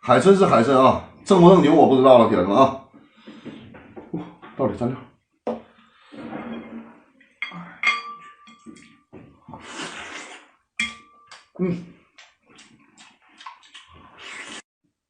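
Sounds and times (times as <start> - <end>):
utensils clinking on dishes: 7.4 - 9.1, 10.8 - 11.4
noisy eating: 11.4 - 14.6.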